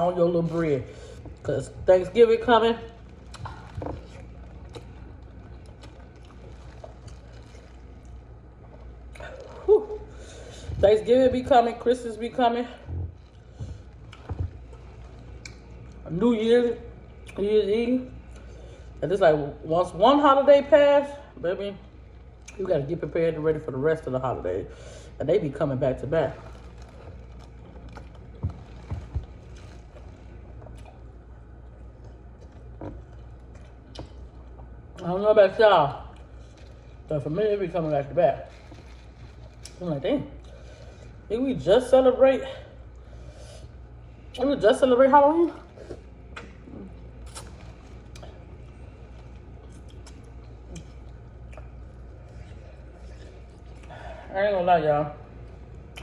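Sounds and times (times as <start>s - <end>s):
steady low hum: 0.0s - 56.0s
chewing and mouth clicks: 2.8s - 9.7s, 13.0s - 16.0s, 17.2s - 17.4s, 22.2s - 22.7s, 26.4s - 35.1s, 38.5s - 39.8s, 45.6s - 54.0s, 55.5s - 56.0s.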